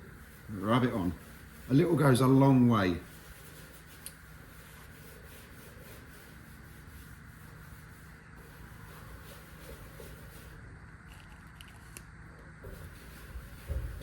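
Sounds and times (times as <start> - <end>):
cloth rag rubbing metal: 0.1 - 10.5.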